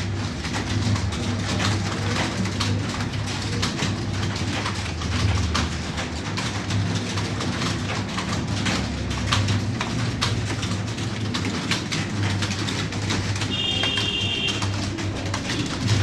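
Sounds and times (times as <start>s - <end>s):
keyboard typing clicks: 12.6s - 16.0s.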